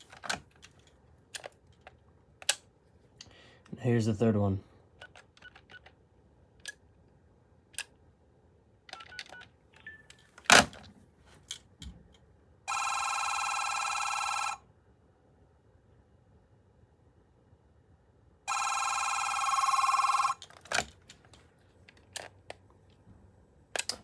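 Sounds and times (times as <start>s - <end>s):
telephone warbling ring: 12.7s - 14.6s, 18.5s - 20.4s.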